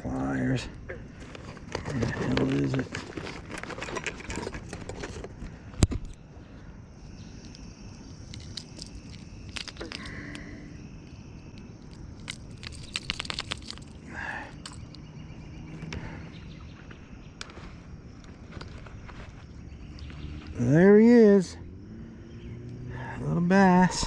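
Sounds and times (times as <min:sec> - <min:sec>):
rummaging through fishing gear: 0:00.0 - 0:06.4, 0:07.4 - 0:20.7
clicks and rustles: 0:00.7 - 0:06.3, 0:07.3 - 0:15.1, 0:15.7 - 0:20.6.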